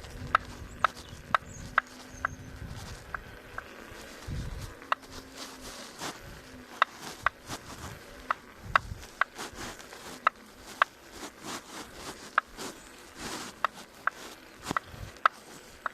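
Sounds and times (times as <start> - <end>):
hub motor knocking: 0.0 - 3.8, 13.6 - 15.9.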